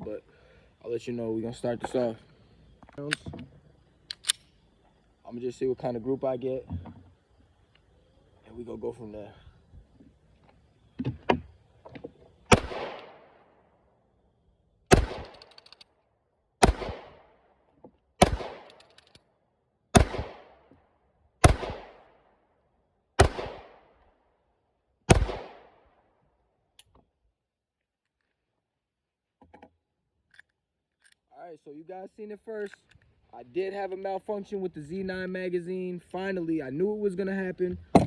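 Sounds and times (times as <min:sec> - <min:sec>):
gun handling clicks: 0:03.0 - 0:03.3, 0:04.0 - 0:04.5, 0:15.0 - 0:16.0, 0:18.3 - 0:19.3, 0:30.3 - 0:31.3, 0:32.6 - 0:33.1
pistol shots: 0:12.5 - 0:13.4, 0:14.9 - 0:15.7, 0:16.6 - 0:17.4, 0:18.2 - 0:19.0, 0:19.9 - 0:20.7, 0:21.4 - 0:22.2, 0:23.2 - 0:24.0, 0:25.1 - 0:25.8.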